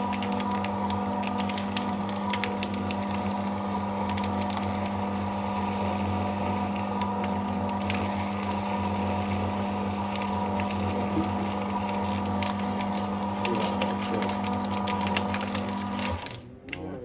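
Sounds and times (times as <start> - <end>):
paper ticking and crackling in cutters: 0.0 - 3.4, 4.0 - 5.0, 10.0 - 17.0
paper shredder motor hum: 0.0 - 17.0.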